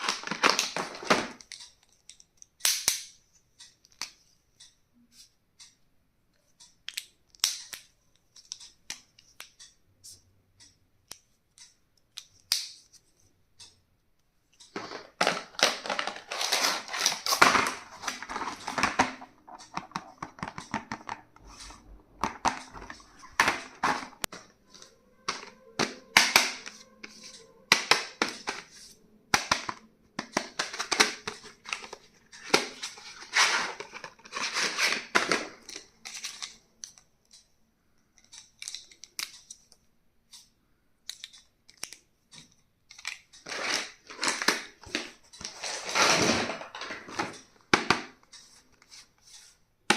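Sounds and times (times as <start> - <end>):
packaging rustling and crinkling: 14.8 - 19.4, 30.6 - 36.5
sharp clicks and taps: 17.7 - 28.6.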